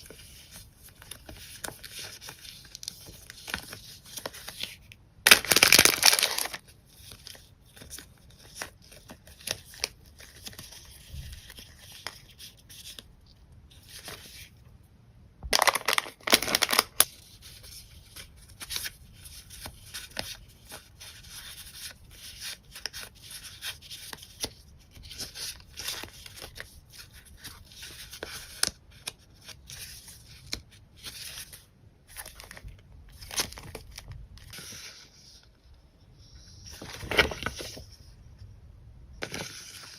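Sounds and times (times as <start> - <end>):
paper rustling and crinkling: 0.0 - 13.1, 15.5 - 35.5, 36.2 - 38.1, 39.2 - 39.9
packaging tearing: 5.3 - 6.6, 15.5 - 17.1.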